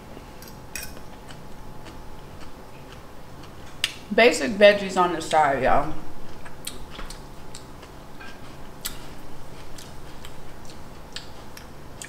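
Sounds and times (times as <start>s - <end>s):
chewing: 0.8s - 4.0s, 6.3s - 12.0s.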